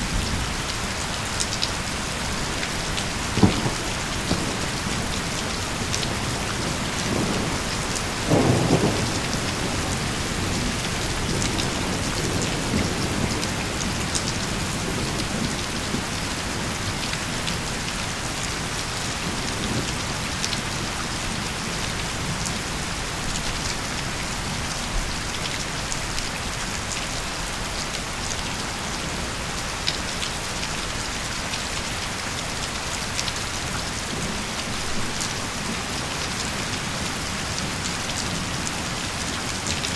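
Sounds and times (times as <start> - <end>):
steady rain: 0.0 - 39.9
thunder rumble: 1.8 - 16.1.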